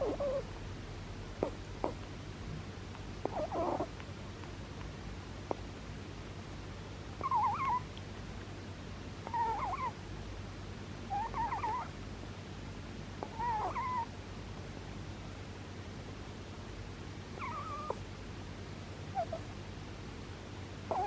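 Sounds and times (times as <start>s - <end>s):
rabbit snoring squeaky whistles: 0.0s - 0.5s, 3.2s - 3.9s, 7.2s - 7.8s, 9.2s - 10.0s, 11.1s - 11.9s, 13.2s - 14.1s, 17.4s - 18.0s, 19.1s - 19.5s.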